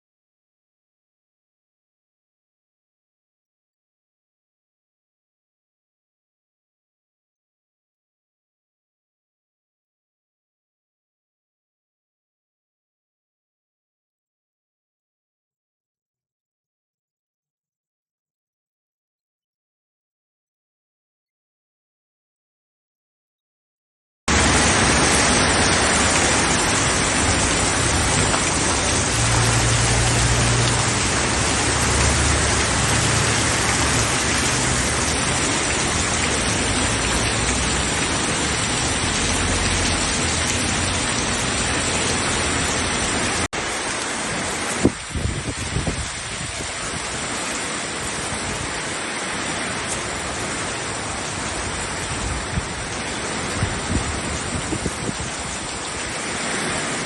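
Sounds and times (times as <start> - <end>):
heavy rain pouring: 24.3 - 57.0.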